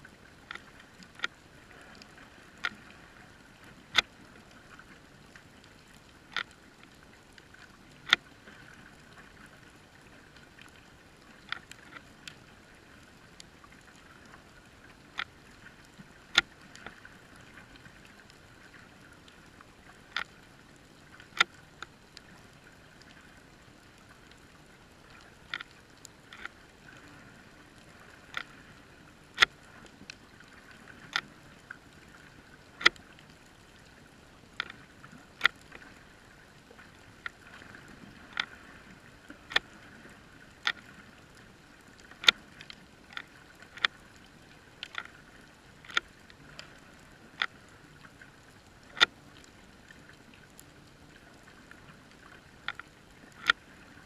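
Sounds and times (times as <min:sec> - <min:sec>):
faint steady underwater hiss: 0:00.0 - 0:54.0.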